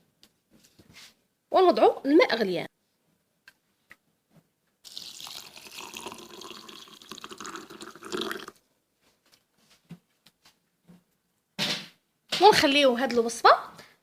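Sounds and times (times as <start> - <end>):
water pouring into a glass: 4.9 - 8.6.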